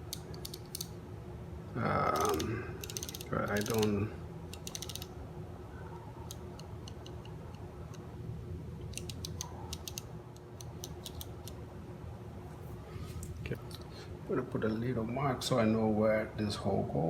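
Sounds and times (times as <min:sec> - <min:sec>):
faint steady hum: 0:00.0 - 0:17.0
turntable mechanism clicks: 0:02.2 - 0:05.1, 0:08.8 - 0:11.6.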